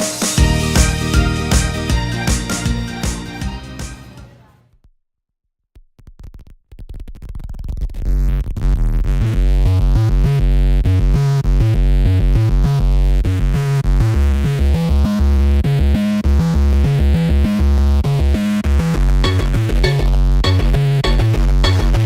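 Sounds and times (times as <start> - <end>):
drum machine beat: 0.0 - 4.1, 19.2 - 22.0
electronic synthesizer music: 19.2 - 22.0.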